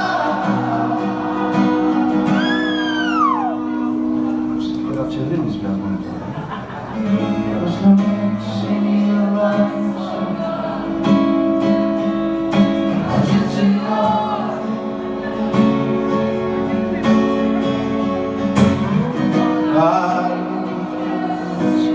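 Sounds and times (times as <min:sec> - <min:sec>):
person singing: 0:00.0 - 0:03.8, 0:12.6 - 0:16.9, 0:18.9 - 0:21.9
strummed acoustic guitar: 0:00.0 - 0:21.9.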